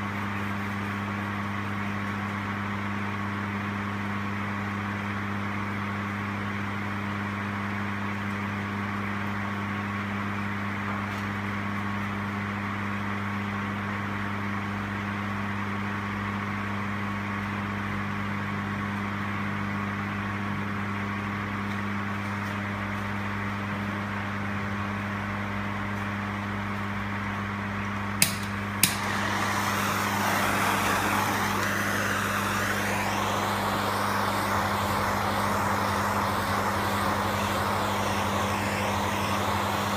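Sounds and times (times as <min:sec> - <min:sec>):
workshop machine hum: 0:17.6 - 0:39.9
sharp clicks: 0:28.2 - 0:29.1
loud rushing hiss: 0:28.2 - 0:39.9.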